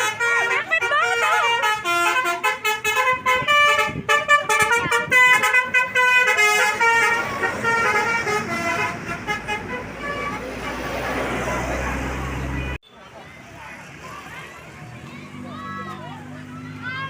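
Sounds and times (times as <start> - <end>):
musical air horn tune: 0.0 - 10.8.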